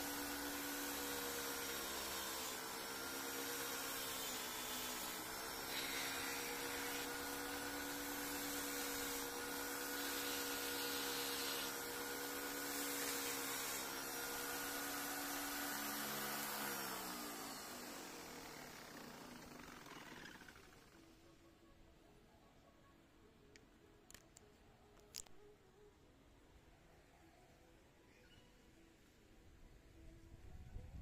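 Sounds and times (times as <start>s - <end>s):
power tool motor running: 0.0s - 21.1s.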